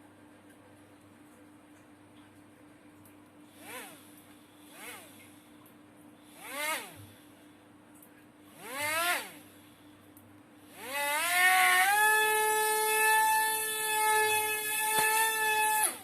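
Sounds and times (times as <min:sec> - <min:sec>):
toy helicopter motor whining: 0:03.6 - 0:04.1, 0:04.7 - 0:05.2, 0:06.4 - 0:07.1, 0:08.6 - 0:09.4, 0:10.7 - 0:16.0.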